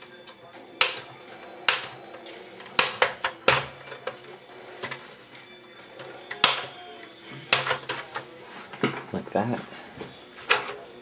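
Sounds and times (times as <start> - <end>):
plastic clips snapping: 0.2 - 5.0, 6.0 - 8.2.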